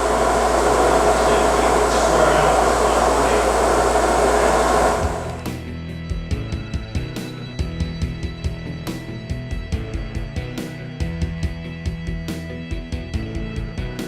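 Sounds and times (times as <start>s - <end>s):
whirring machinery hum: 0.0s - 5.5s.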